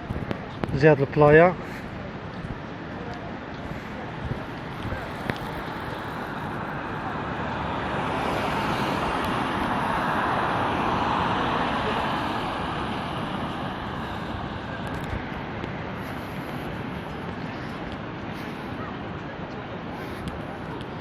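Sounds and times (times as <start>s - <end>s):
car passing by: 4.2s - 21.0s.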